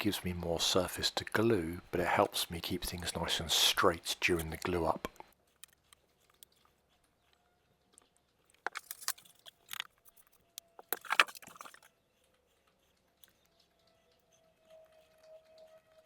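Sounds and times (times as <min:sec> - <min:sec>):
wood pieces clicking and tapping: 0:08.5 - 0:11.9.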